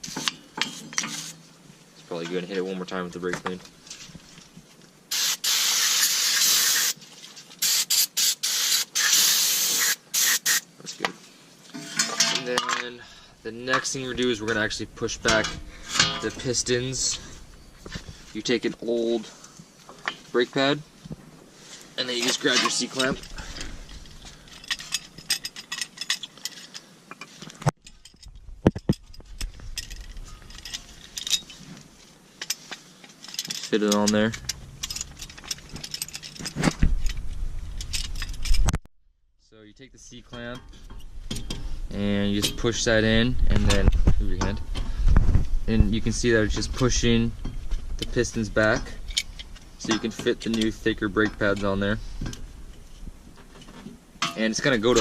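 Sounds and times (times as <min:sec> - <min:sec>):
aerosol spray hissing: 0:05.1 - 0:07.0, 0:07.6 - 0:10.6
metal clinking and rattling: 0:11.7 - 0:13.0, 0:13.6 - 0:18.1, 0:22.2 - 0:38.7, 0:46.4 - 0:55.0.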